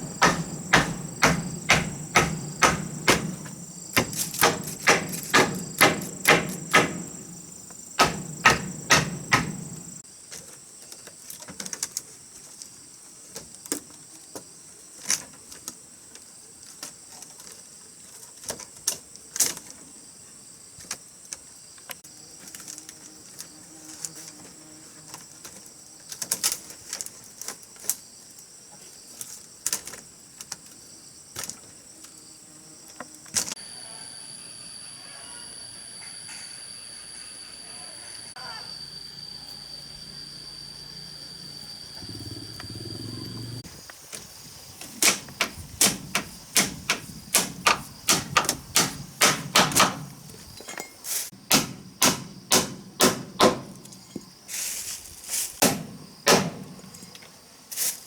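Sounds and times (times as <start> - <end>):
strikes on wood: 0.0 - 7.4, 8.0 - 9.9, 45.0 - 50.2, 51.5 - 53.9
insect chirring: 0.0 - 10.0, 29.0 - 53.1.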